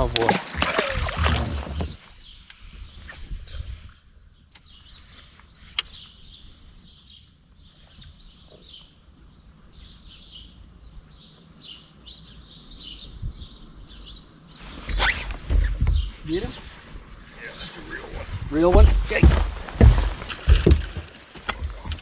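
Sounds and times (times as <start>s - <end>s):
birds chirping: 0.0s - 22.0s.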